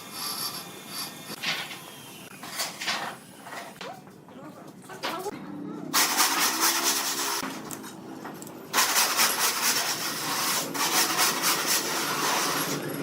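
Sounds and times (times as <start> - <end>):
power machine cutting wood: 6.0 - 7.6, 8.8 - 13.0.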